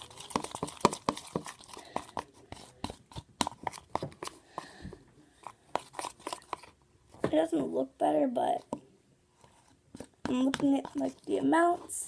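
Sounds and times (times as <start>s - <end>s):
utensil tapping bowl: 0.0s - 4.7s, 10.0s - 11.3s.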